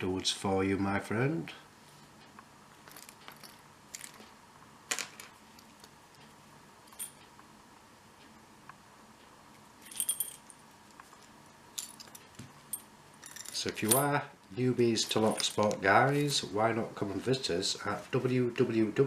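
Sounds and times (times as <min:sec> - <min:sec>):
padlock and keys clinking: 0:02.8 - 0:04.2, 0:06.8 - 0:07.2, 0:09.8 - 0:10.6, 0:11.7 - 0:14.2, 0:15.0 - 0:16.4
keys jingling: 0:02.9 - 0:04.2, 0:09.8 - 0:10.6, 0:11.7 - 0:14.2, 0:15.0 - 0:16.4.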